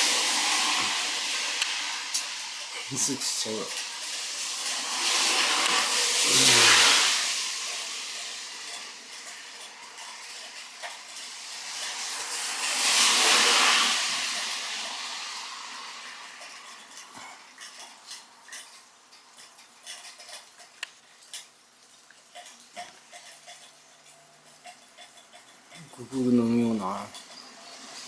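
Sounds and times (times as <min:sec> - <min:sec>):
loud rush of noise: 0:11.4 - 0:16.2.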